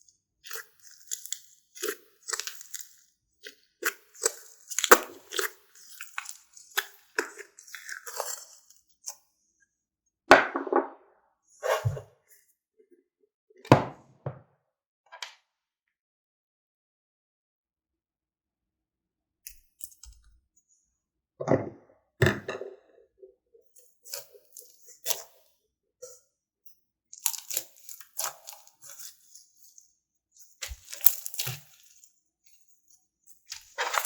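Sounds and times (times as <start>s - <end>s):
slime squished by hand: 30.6s - 31.9s.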